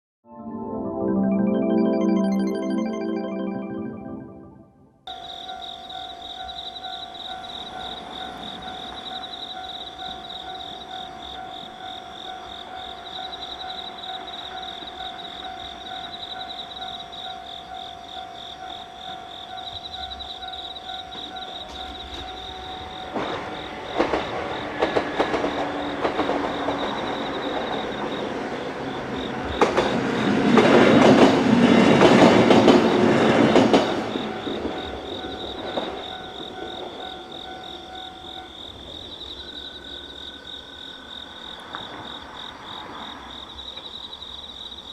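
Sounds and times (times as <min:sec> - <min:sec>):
train wheels clattering: 0:19.0 - 0:39.1.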